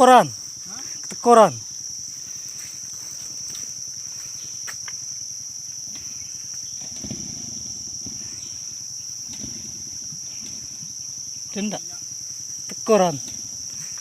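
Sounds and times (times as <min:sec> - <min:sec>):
high-pitched insect chorus: 0:00.0 - 0:14.0
faint low knocks: 0:05.9 - 0:11.5.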